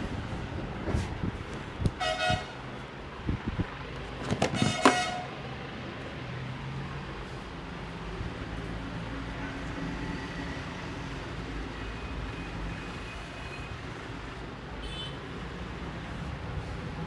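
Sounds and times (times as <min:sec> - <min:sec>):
road traffic rumble: 0:00.0 - 0:17.0.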